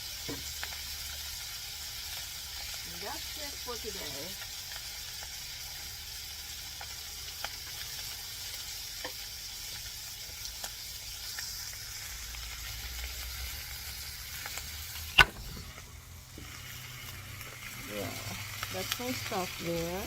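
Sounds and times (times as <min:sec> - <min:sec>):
fish sizzling in hot oil: 0:00.0 - 0:20.0
oil spattering pops: 0:15.1 - 0:16.6
sharp knock: 0:15.2 - 0:15.7.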